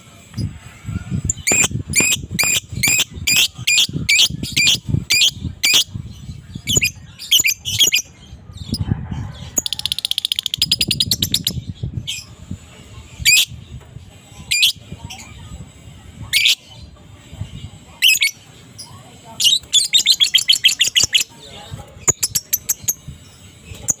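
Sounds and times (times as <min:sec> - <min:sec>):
lovebird chattering trill: 0:01.2 - 0:08.1, 0:19.4 - 0:21.3.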